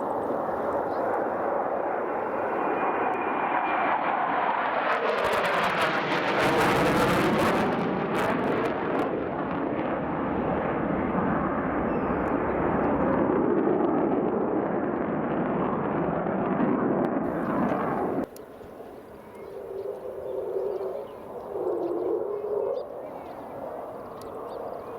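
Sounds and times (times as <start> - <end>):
jet engine roaring: 0.0 - 24.9.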